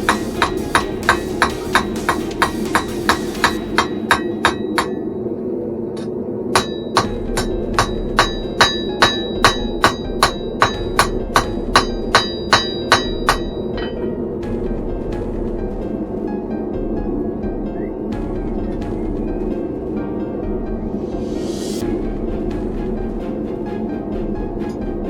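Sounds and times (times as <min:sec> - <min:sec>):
hammer striking steel on anvil: 0:00.0 - 0:05.2, 0:06.0 - 0:14.2
forge roaring: 0:00.0 - 0:25.0.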